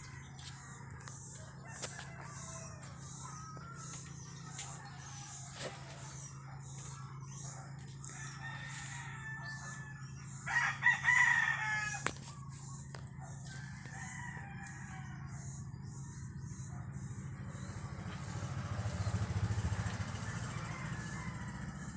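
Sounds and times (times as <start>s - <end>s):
rooster crowing: 0.0s - 6.0s, 8.0s - 12.4s, 13.3s - 15.4s, 19.5s - 21.9s
steady low hum: 0.0s - 20.2s.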